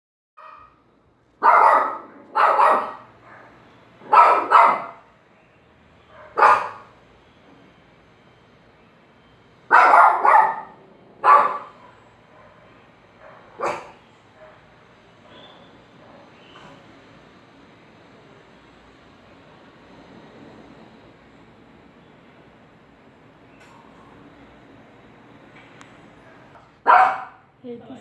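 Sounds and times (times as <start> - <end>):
dog barking: 0.4 - 0.8, 1.4 - 5.1, 6.1 - 7.0, 9.7 - 14.7, 26.3 - 27.5.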